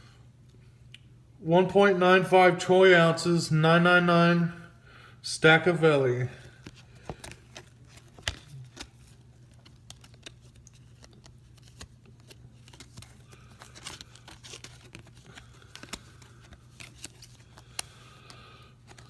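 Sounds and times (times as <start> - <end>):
low electrical hum: 0.0 - 19.0
paper and packaging rustling: 6.5 - 19.0.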